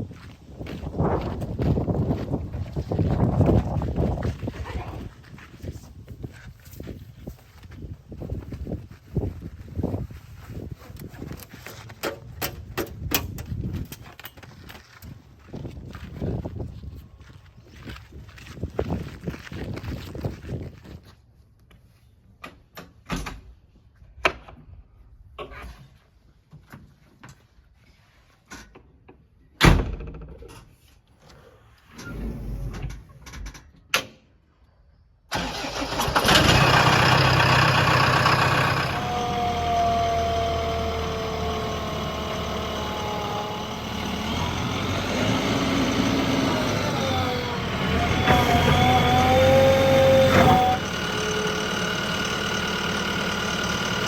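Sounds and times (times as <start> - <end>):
heavy machinery diesel engine: 35.4 - 54.0.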